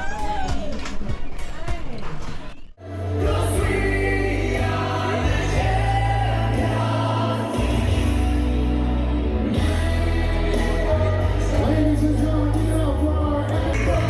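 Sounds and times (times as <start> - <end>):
singing voices: 2.8 - 14.0
sustained bass notes: 2.8 - 14.0.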